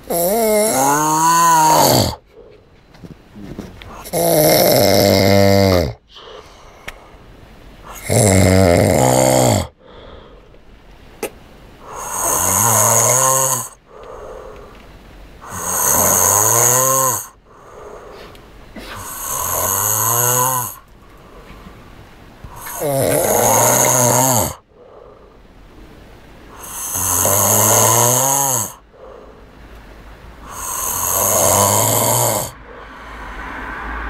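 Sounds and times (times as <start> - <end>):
boy snoring: 0.0 - 2.5, 3.4 - 6.7, 7.8 - 10.1, 11.8 - 14.7, 15.4 - 20.9, 22.5 - 25.1, 26.5 - 29.4, 30.4 - 33.8
quiet breathing: 2.1 - 4.2, 6.0 - 8.0, 9.6 - 11.1, 11.7 - 12.4, 13.5 - 27.2, 28.6 - 31.8, 32.5 - 34.0.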